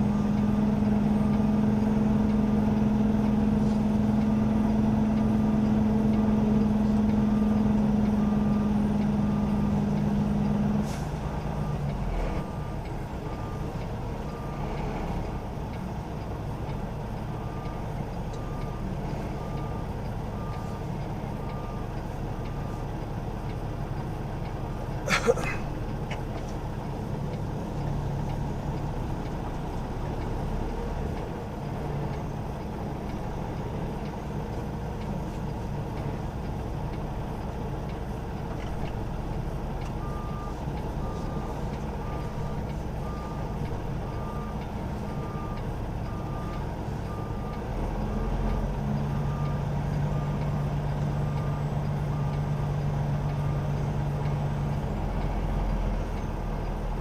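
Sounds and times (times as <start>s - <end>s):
diesel truck engine running: 0.0s - 57.0s.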